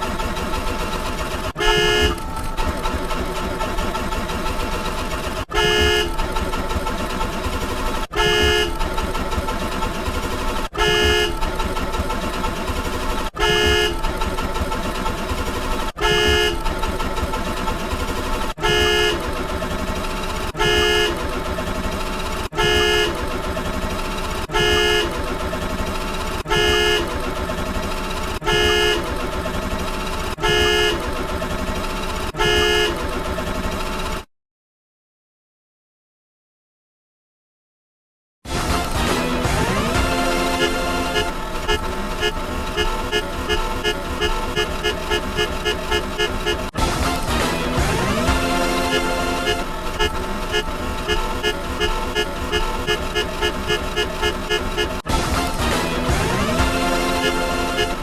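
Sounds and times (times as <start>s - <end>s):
loud horn-like honk: 0.0s - 34.3s, 38.5s - 58.0s
dense droning tones: 38.6s - 58.0s.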